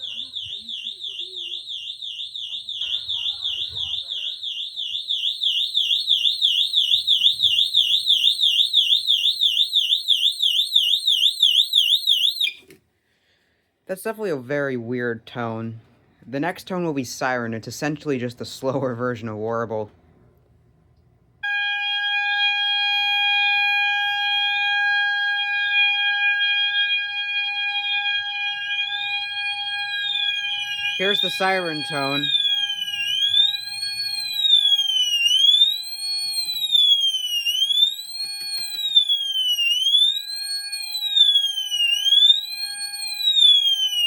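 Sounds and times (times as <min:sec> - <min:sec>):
fire alarm warble tone: 0:00.0 - 0:12.6, 0:21.4 - 0:44.0.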